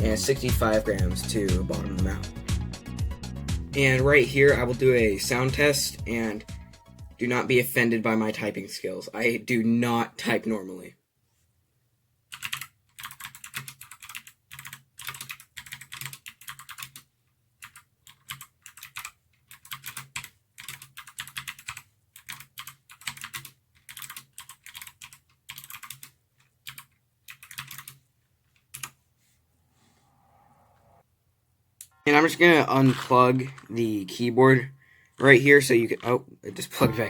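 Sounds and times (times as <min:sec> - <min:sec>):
mechanical keyboard typing: 0:12.3 - 0:28.0, 0:28.6 - 0:29.0.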